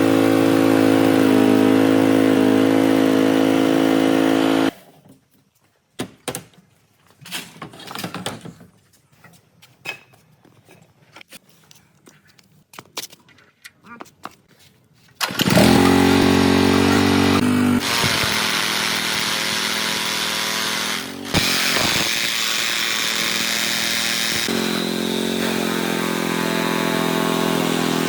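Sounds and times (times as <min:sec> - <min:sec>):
small generator engine running: 0:00.0 - 0:04.7, 0:15.2 - 0:28.0.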